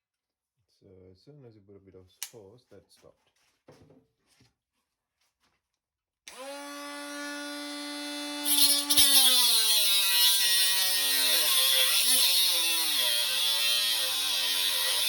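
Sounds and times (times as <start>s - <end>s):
angle grinder motor whine: 6.3s - 15.0s
grinder cutting hiss: 8.4s - 15.0s.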